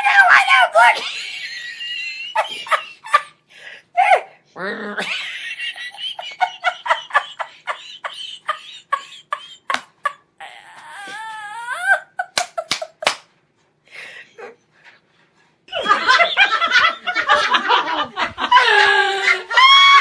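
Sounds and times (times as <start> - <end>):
person giggling: 1.0 - 3.4, 5.0 - 13.1, 15.7 - 20.0.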